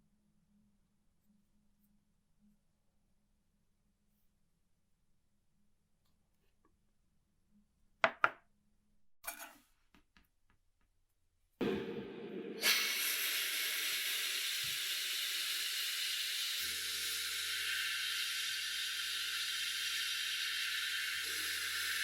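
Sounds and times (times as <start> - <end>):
hiss of spraying gas: 12.5 - 22.0.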